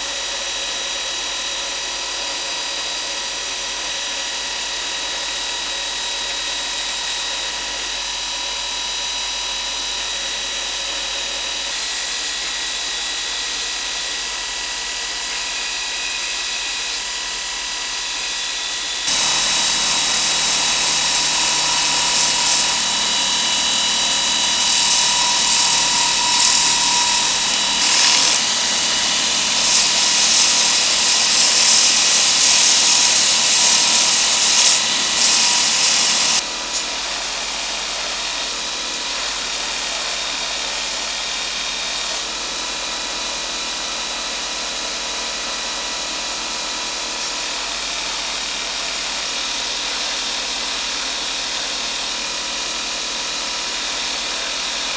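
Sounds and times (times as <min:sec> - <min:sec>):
power tool running: 0:17.5 - 0:40.3.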